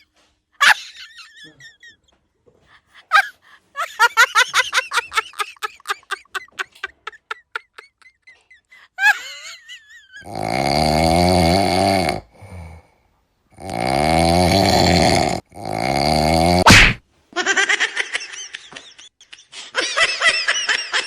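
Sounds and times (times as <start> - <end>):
person snoring loudly: 10.2 - 17.0.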